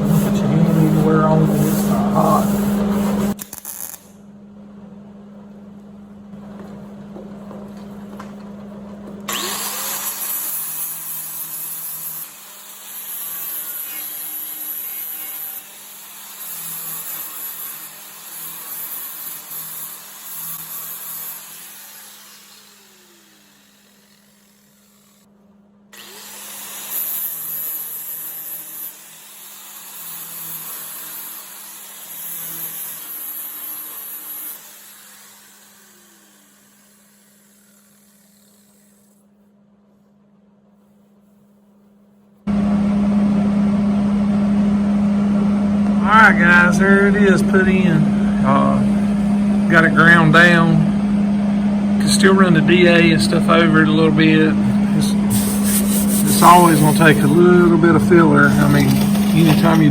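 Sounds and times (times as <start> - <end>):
steady low hum: 0.0 - 3.4, 4.2 - 9.3, 39.3 - 59.9
grinder grinding metal: 0.0 - 4.1, 9.3 - 25.3, 26.0 - 39.4, 52.0 - 59.9.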